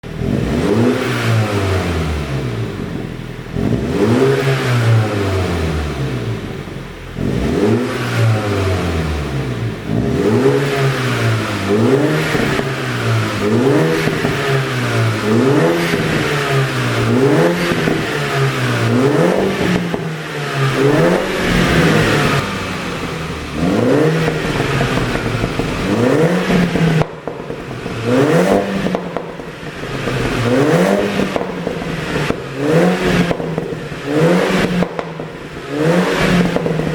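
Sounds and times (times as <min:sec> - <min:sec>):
car engine revving: 0:00.0 - 0:36.9
exhaust pops and crackles: 0:09.8 - 0:36.9.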